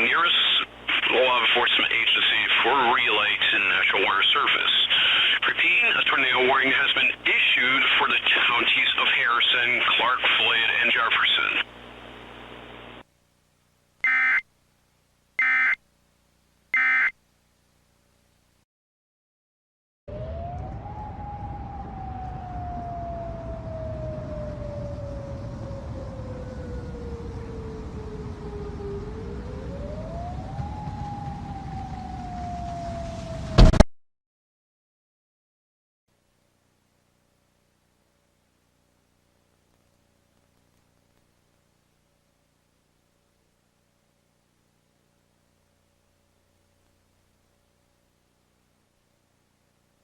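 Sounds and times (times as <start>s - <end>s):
harsh buzzing data tones: 0.0s - 13.0s, 14.0s - 14.5s, 15.4s - 15.8s, 16.7s - 17.2s
faint hiss: 0.0s - 13.7s
tornado siren wailing: 14.0s - 14.4s, 15.4s - 15.8s, 16.8s - 17.1s, 20.1s - 33.8s
sudden loud burst: 33.5s - 33.8s.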